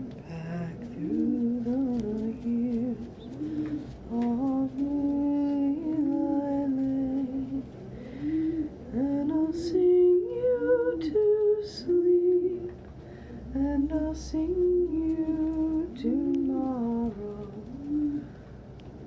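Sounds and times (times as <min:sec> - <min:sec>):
woman singing a lullaby: 0:00.0 - 0:07.8, 0:08.6 - 0:12.9, 0:13.5 - 0:18.4
pigeons cooing: 0:02.6 - 0:04.6, 0:17.6 - 0:18.6.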